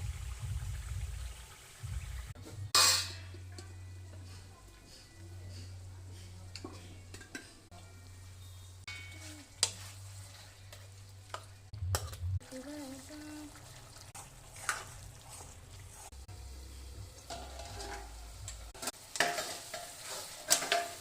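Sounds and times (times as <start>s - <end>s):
beans stir-frying in a pan: 9.1s - 11.7s, 12.8s - 21.0s
spoon scraping and clinking on pan: 17.3s - 18.2s, 18.8s - 21.0s.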